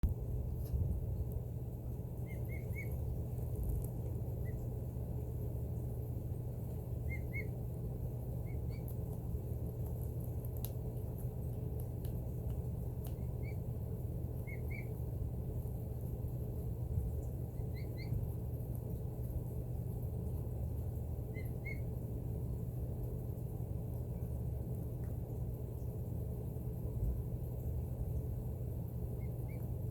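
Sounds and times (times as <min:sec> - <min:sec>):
heat vent blowing: 0:00.0 - 0:29.9
chicks peeping: 0:02.2 - 0:03.0, 0:07.0 - 0:07.6, 0:14.4 - 0:15.0, 0:17.5 - 0:18.2.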